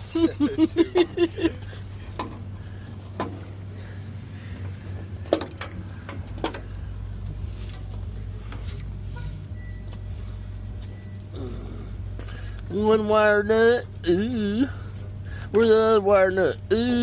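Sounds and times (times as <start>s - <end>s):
steady low hum: 0.0s - 17.0s
metallic clicks and knocks: 5.2s - 9.0s.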